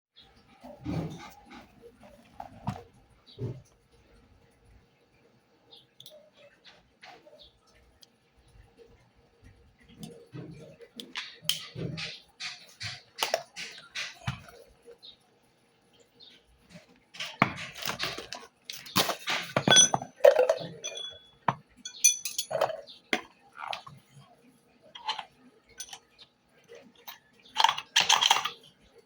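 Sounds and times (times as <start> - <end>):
hard objects clattering: 9.8 - 14.8, 16.7 - 24.3, 24.9 - 29.0
metallic rings: 17.2 - 23.0, 25.0 - 26.2.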